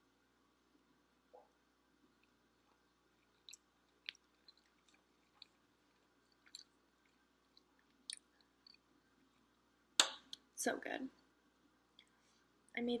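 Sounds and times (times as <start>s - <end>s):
wet chewing: 2.1s - 9.6s
mouth clicks and squelches: 2.2s - 10.5s.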